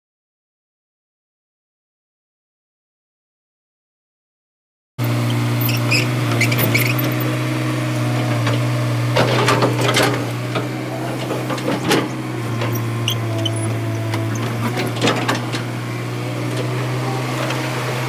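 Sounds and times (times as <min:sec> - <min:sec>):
excavator diesel engine running: 0:05.0 - 0:18.0
short high squeaks: 0:05.6 - 0:07.3, 0:11.2 - 0:15.5.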